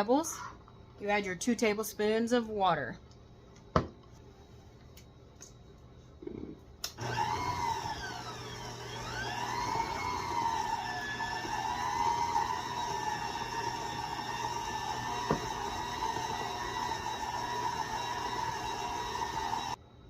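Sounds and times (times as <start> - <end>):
stand mixer motor whine: 7.0 - 19.8.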